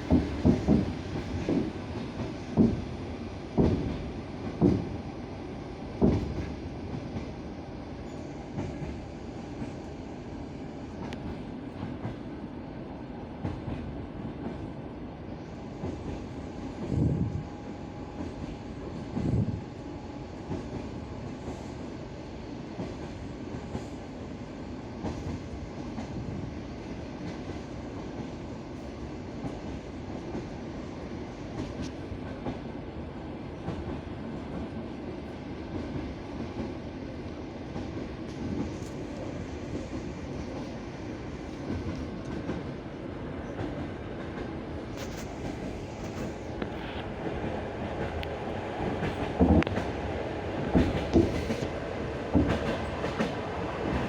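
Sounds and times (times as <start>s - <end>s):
train wheels clacking over rail joints: 0.0s - 2.8s, 3.6s - 4.9s, 6.0s - 6.5s, 50.7s - 54.0s.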